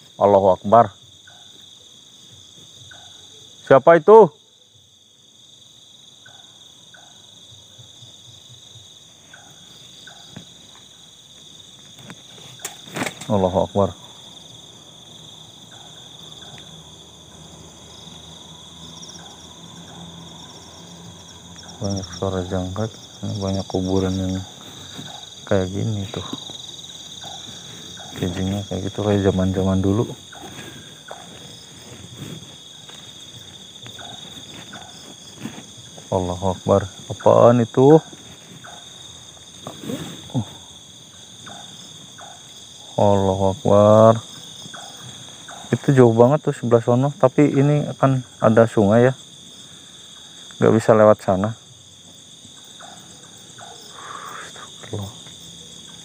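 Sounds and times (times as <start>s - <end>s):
crickets trilling: 0.0s - 56.0s
faint animal calls: 6.1s - 11.1s, 11.9s - 51.1s, 52.5s - 56.0s
soft rustles: 9.2s - 13.4s, 23.0s - 37.2s, 38.0s - 40.8s.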